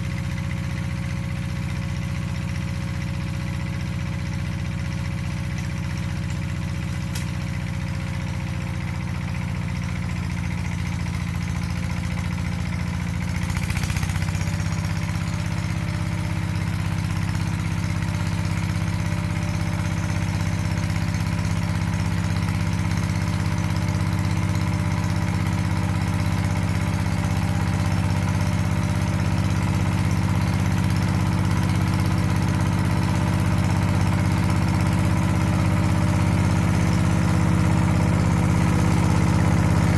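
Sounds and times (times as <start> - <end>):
tiller diesel engine running: 0.0 - 39.9.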